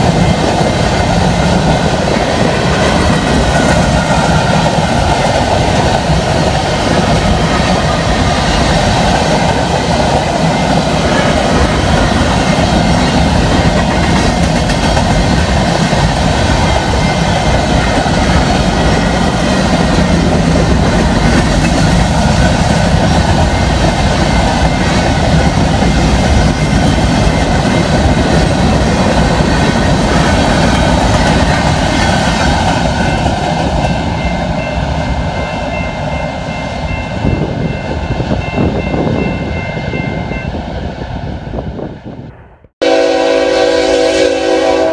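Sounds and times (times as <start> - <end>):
clickety-clack over rail joints: 0.0 - 34.1
train wheels rumbling on rails: 0.0 - 44.9.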